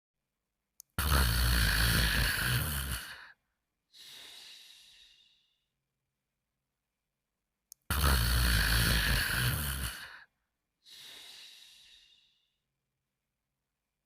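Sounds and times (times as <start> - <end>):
cartoon snoring: 1.0 - 3.4, 7.9 - 10.3.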